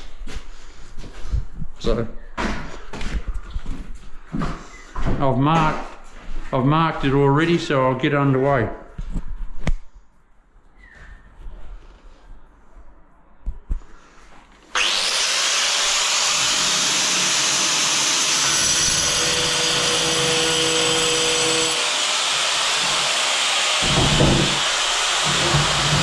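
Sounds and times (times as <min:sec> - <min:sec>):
angle grinder cutting tile: 0:14.7 - 0:26.0.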